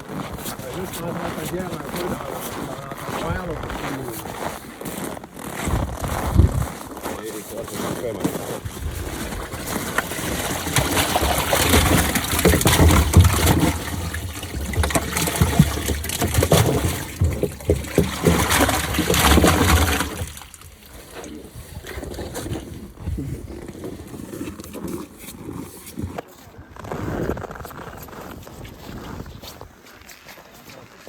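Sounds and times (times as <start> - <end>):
water rushing and splashing: 9.0 - 21.2.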